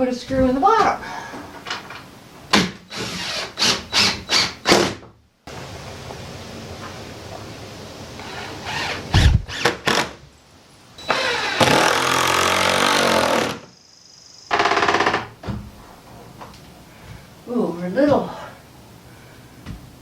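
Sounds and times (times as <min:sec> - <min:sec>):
power drill driving a screw: 0:02.9 - 0:05.0, 0:11.1 - 0:13.7.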